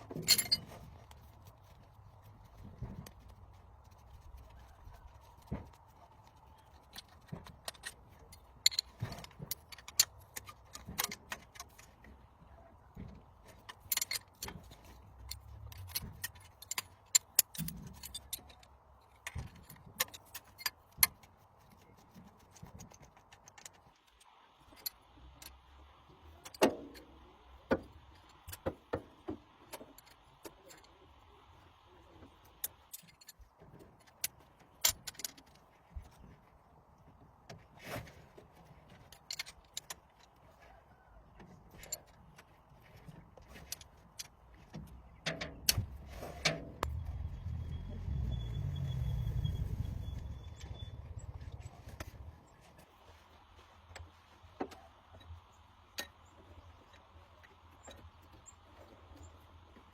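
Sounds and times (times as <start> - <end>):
metal tools clinking and tapping: 0.0 - 0.9, 6.8 - 11.9, 13.5 - 21.2.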